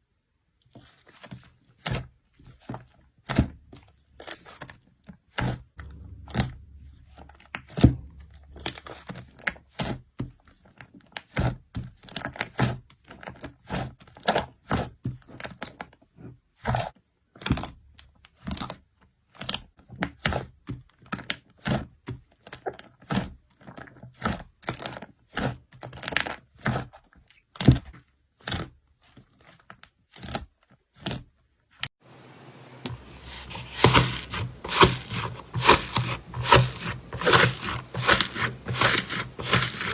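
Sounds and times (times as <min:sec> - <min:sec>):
slime rubbing: 0:32.1 - 0:39.9.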